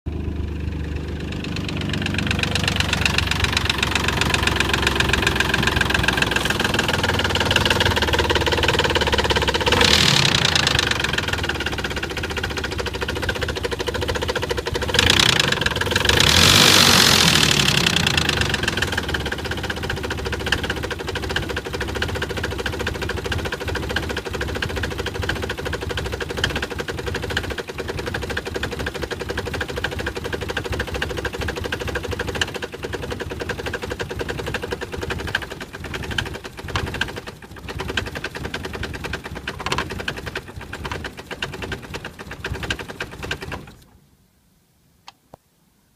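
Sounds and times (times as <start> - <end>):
engine revving: 0.1 - 28.4
car engine knocking: 0.8 - 43.8.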